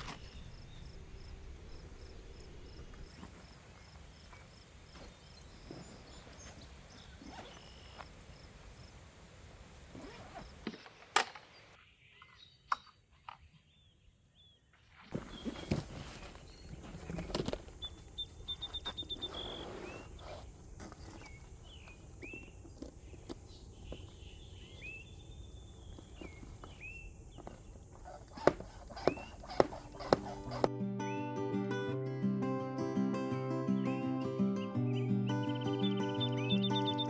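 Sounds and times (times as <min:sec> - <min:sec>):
bird chirps: 0:03.1 - 0:08.9, 0:10.0 - 0:30.7, 0:34.6 - 0:37.0
gear clicking and knocking: 0:28.1 - 0:30.7.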